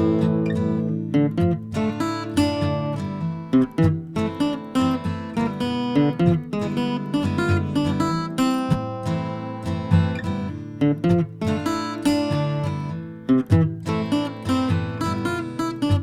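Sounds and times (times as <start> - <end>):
acoustic guitar strumming: 0.0 - 16.0.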